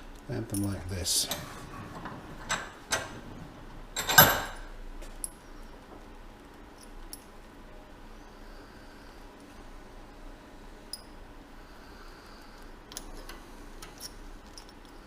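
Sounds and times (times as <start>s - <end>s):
metallic clatter: 0.5s - 5.4s.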